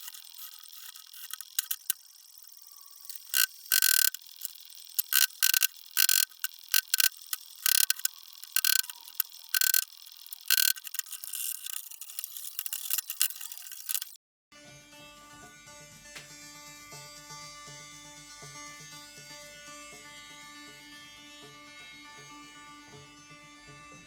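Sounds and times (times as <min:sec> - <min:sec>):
irregular sharp clicks: 0:00.0 - 0:02.0, 0:03.1 - 0:14.2
short noisy bursts: 0:00.0 - 0:14.2.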